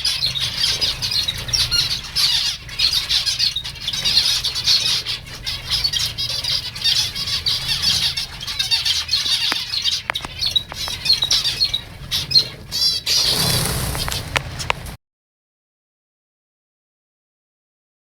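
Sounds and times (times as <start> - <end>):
flock of finches chattering: 0.0 - 15.0
sharp clicks: 9.2 - 11.1, 13.7 - 15.0.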